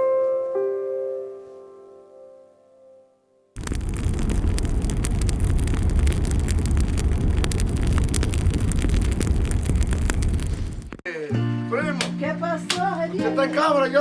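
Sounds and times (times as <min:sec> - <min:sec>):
bonfire crackling and popping: 0:03.6 - 0:11.0
fire low rumble: 0:03.6 - 0:11.0.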